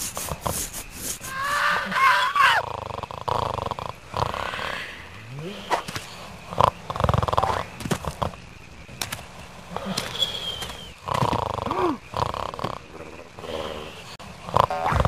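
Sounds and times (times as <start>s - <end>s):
cartoon character snoring: 2.6s - 5.9s, 11.0s - 15.0s.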